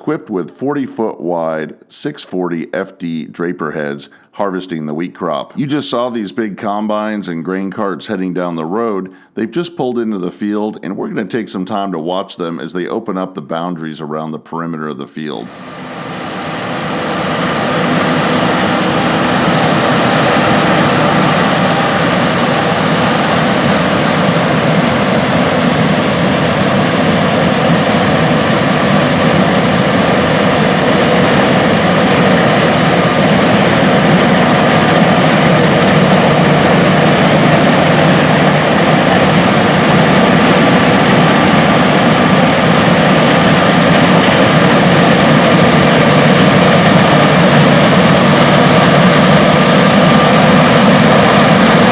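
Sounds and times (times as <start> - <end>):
combine harvester engine drone: 15.4 - 51.9.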